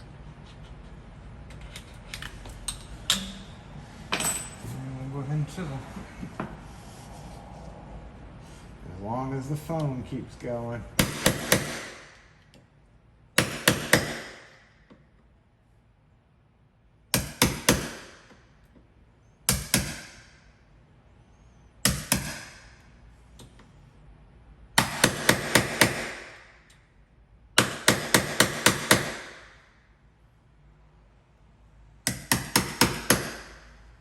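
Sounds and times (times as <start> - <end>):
hammer striking wood chisel: 11.0 - 12.2, 13.4 - 14.6, 17.1 - 18.4, 19.5 - 20.2, 21.8 - 22.7, 24.8 - 26.5, 27.6 - 29.6, 32.0 - 33.8.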